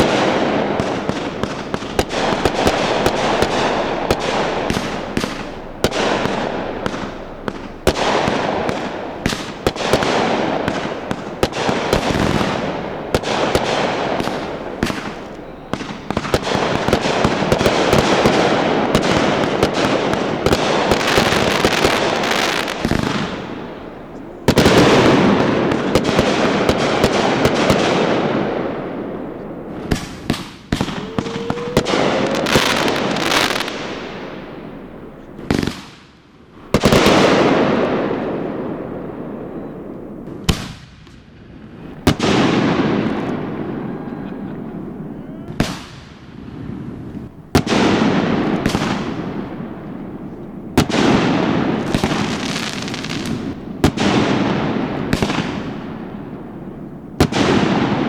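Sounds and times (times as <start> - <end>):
rising firework whistle: 0.0 - 35.3
fireworks bangs and crackle: 0.0 - 58.0.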